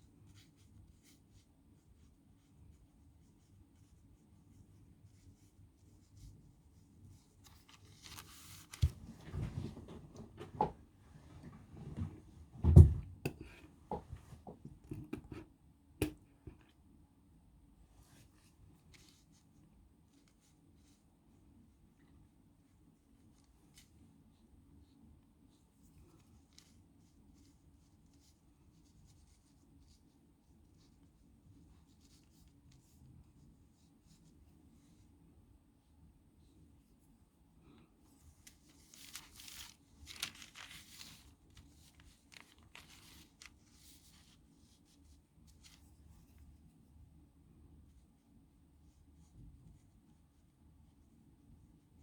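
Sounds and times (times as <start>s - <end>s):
paper rustling: 7.4s - 10.6s, 38.4s - 44.8s
thump on desk: 12.6s - 14.1s.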